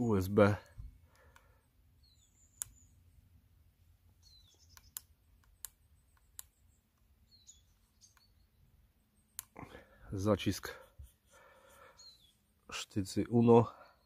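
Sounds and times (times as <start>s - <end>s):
faint sharp clicks: 1.1s - 1.5s, 2.5s - 2.8s, 4.6s - 7.1s, 7.7s - 8.3s, 9.3s - 9.6s.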